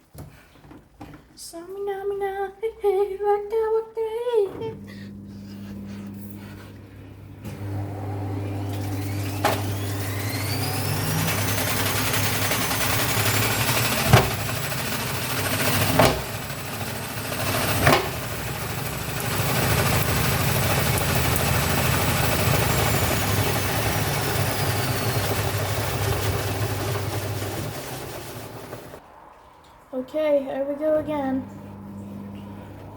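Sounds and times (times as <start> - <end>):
washing machine motor hum: 4.3 - 29.0, 31.0 - 32.9
drum banging: 11.4 - 29.0.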